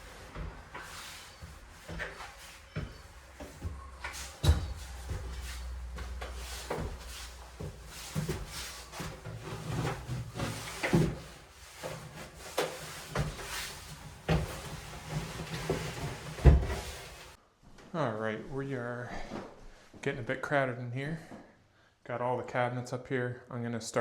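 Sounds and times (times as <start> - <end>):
wooden knocks and clunks: 1.5 - 17.4.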